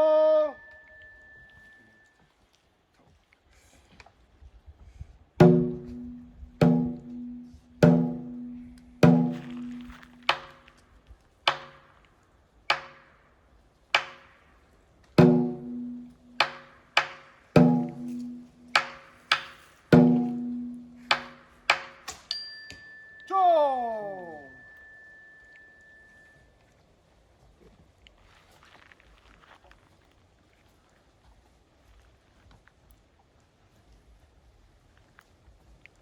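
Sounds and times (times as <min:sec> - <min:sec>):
percussive strikes ringing low: 0:05.4 - 0:10.7, 0:11.5 - 0:11.8, 0:12.7 - 0:13.1, 0:15.2 - 0:22.4.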